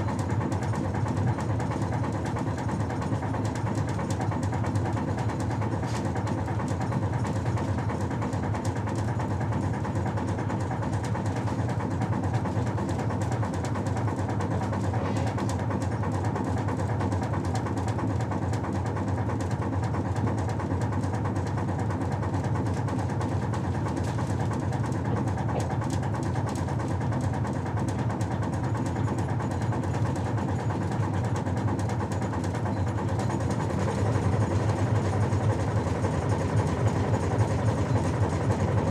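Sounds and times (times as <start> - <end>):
ship machinery drone: 14.2 - 15.8.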